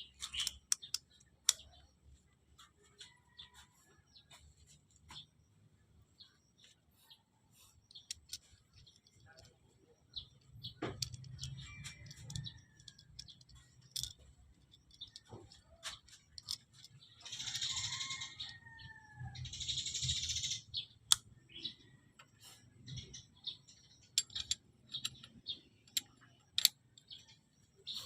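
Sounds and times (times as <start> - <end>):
metal tools clinking: 10.2 - 17.8, 24.1 - 27.3.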